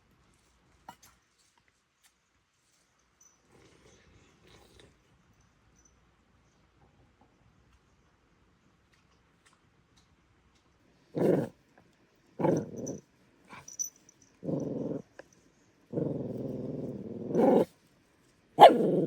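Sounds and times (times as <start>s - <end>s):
dog growling: 11.2s - 11.6s, 12.4s - 13.6s, 14.4s - 15.2s, 15.9s - 17.7s, 18.6s - 19.0s.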